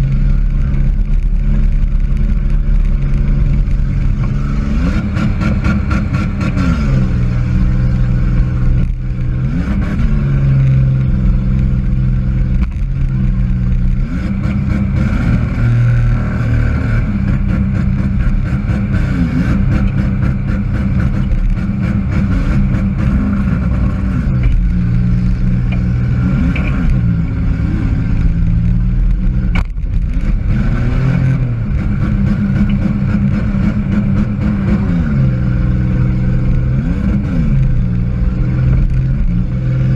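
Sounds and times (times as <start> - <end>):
car engine revving: 0.0 - 39.9
sharp thumps: 19.5 - 34.5.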